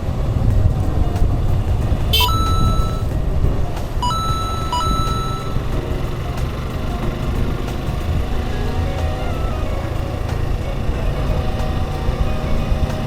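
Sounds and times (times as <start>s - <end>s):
wind on microphone: 0.0s - 13.0s
short electronic beeps: 2.2s - 3.1s, 4.0s - 5.7s.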